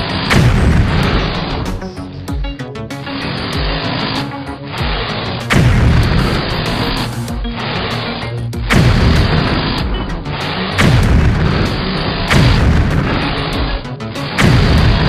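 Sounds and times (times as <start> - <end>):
music: 0.0 - 15.0
heavy boom falling in pitch: 0.3 - 1.8, 5.5 - 6.6, 8.7 - 10.0, 10.8 - 13.8.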